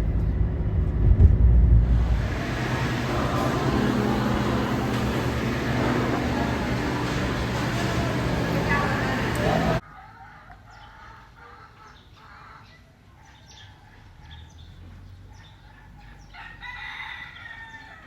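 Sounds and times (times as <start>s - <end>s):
rooster crowing: 1.9s - 10.6s, 16.3s - 18.0s.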